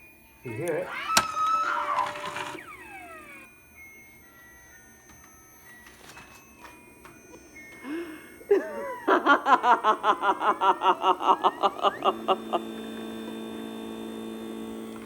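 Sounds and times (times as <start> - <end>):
electrical hum from speaker: 0.2 - 5.7, 6.3 - 15.0
recorded laugh through small speaker: 8.5 - 13.2.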